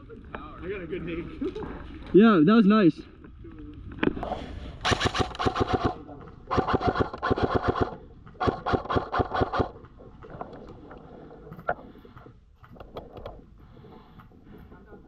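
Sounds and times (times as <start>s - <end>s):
airsoft rifle bursts: 4.8s - 9.7s.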